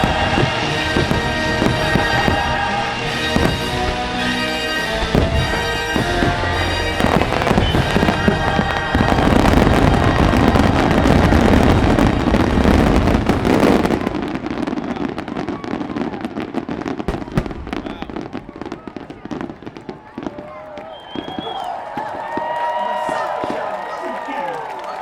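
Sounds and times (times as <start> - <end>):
show music: 0.0 - 13.2
fireworks bursting and crackling: 0.0 - 23.9.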